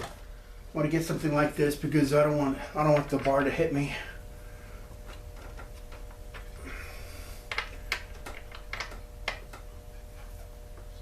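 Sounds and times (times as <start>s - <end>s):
faint steady hum: 0.0s - 11.0s
tools clicking and knocking: 7.5s - 9.7s.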